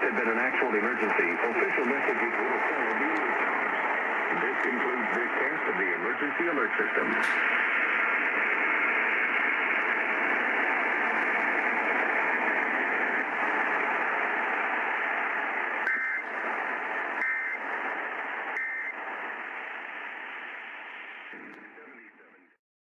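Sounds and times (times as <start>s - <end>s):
radio static hiss: 0.0s - 22.6s
warbling data tone bursts: 15.9s - 16.3s, 17.2s - 17.6s, 18.6s - 19.0s.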